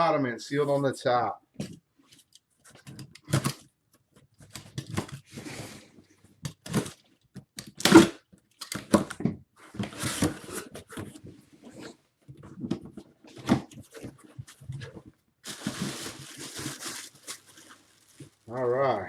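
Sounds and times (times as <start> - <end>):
cardboard tearing and rustling: 7.8 - 8.1, 9.8 - 11.0, 13.5 - 18.5.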